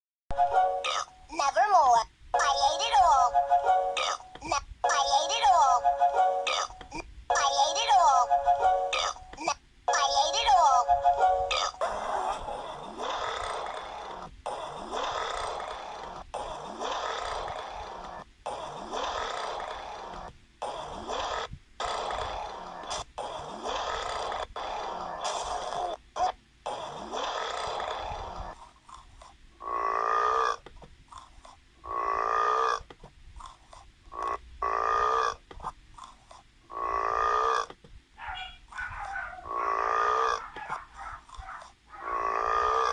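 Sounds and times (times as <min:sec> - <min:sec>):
alligator burping: 0:00.8 - 0:01.2, 0:04.0 - 0:04.5, 0:06.5 - 0:07.1, 0:09.0 - 0:09.6, 0:11.5 - 0:42.9.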